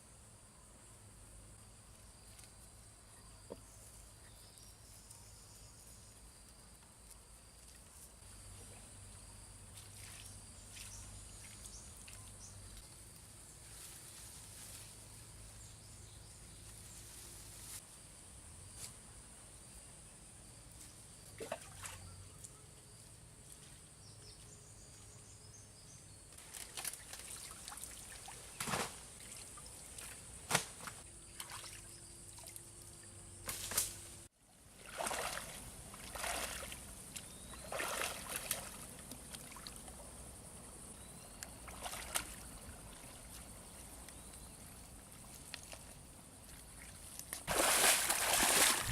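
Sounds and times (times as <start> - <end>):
water trickling into a pond: 7.1 - 13.0, 21.2 - 22.2, 26.4 - 28.6, 31.0 - 33.4, 34.4 - 48.9
short splashes and clicks: 41.7 - 42.4, 46.8 - 48.9.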